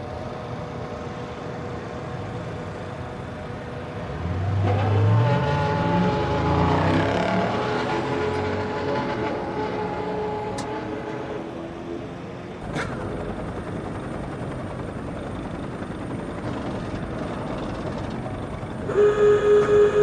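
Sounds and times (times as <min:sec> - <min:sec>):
racing car engine moving away: 0:04.0 - 0:15.0
steady unpitched rumbling: 0:12.6 - 0:18.9.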